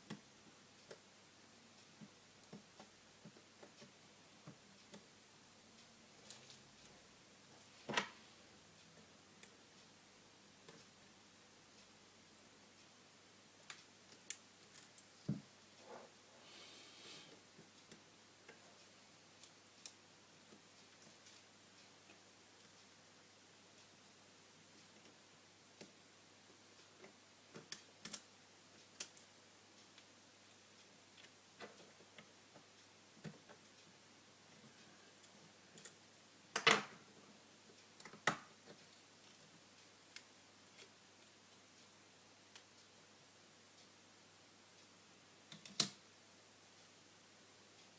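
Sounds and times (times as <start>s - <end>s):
small clicks and taps of tools: 45.5s - 46.0s.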